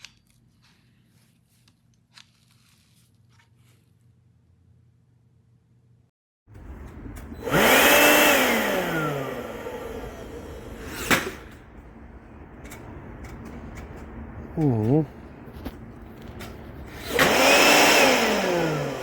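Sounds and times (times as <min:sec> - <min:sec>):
power tool motor spinning: 0:07.3 - 0:11.5, 0:16.9 - 0:19.0.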